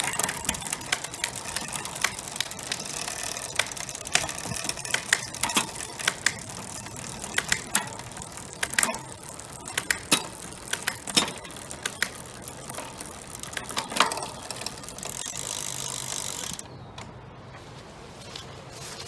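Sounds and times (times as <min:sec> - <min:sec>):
ratchet-like ticking: 0:00.0 - 0:16.7
bicycle chain running and clicking: 0:00.0 - 0:16.8.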